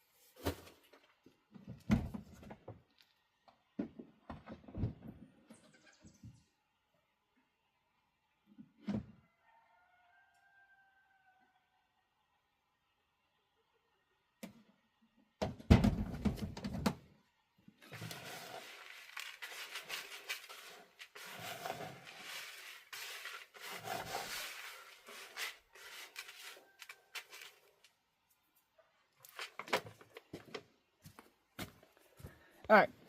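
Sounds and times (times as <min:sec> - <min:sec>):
rustling and scraping: 0:17.8 - 0:28.0, 0:29.2 - 0:30.6.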